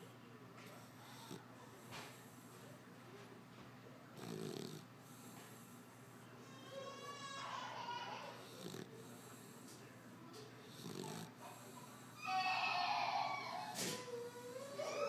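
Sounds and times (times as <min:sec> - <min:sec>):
dog snoring: 0:00.6 - 0:02.5, 0:04.2 - 0:05.8, 0:08.3 - 0:09.7, 0:10.6 - 0:15.0
loud high-pitched crying: 0:06.6 - 0:08.4, 0:12.2 - 0:15.0.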